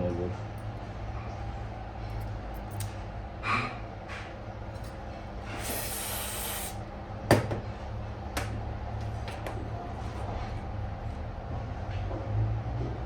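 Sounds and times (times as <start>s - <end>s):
hiss: 5.5s - 6.8s.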